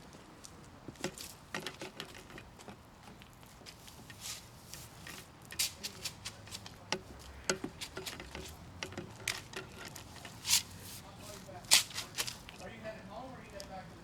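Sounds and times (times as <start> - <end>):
shovel scraping: 3.8 - 6.6, 9.3 - 12.5.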